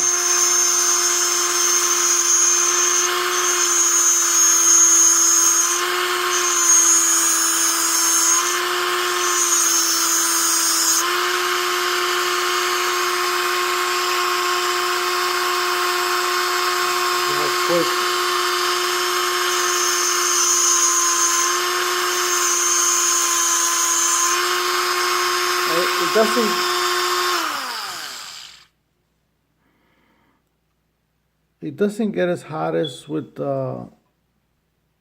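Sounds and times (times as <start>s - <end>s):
grinder motor whine: 0.0s - 28.7s
high grinding hiss: 25.6s - 28.7s.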